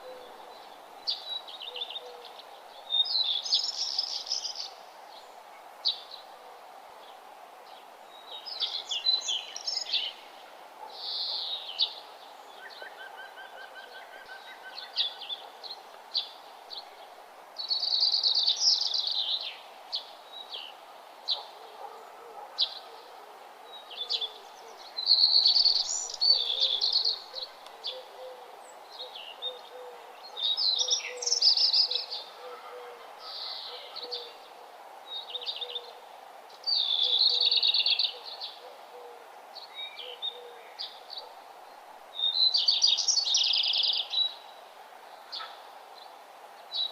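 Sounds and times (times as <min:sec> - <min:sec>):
steady background hiss: 0:00.0 - 0:46.9
birds chirping and trilling: 0:21.3 - 0:36.0, 0:36.6 - 0:41.4.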